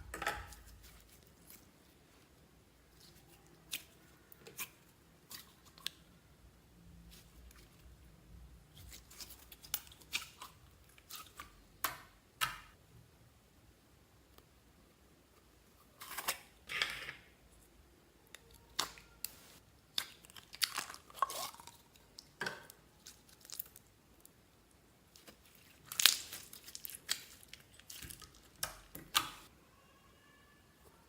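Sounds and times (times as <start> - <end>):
slime squishing and crackling: 18.6 - 23.9, 25.1 - 29.5.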